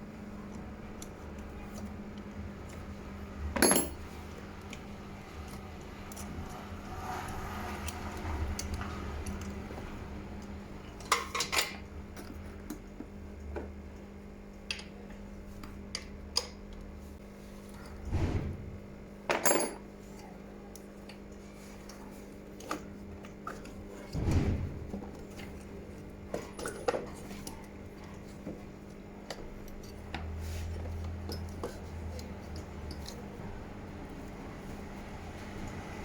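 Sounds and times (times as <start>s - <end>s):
metal tools clinking on workbench: 3.6s - 4.0s, 19.3s - 19.8s.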